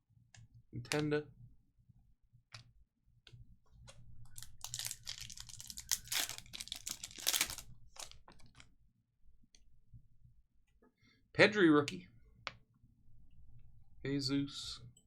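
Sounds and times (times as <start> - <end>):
packaging crinkling and tearing: 4.3 - 8.7.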